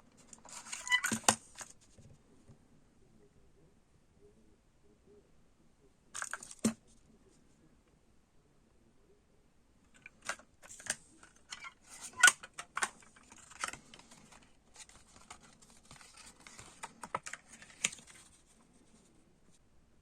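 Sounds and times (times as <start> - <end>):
plastic cassette case clicks: 10.0 - 18.2.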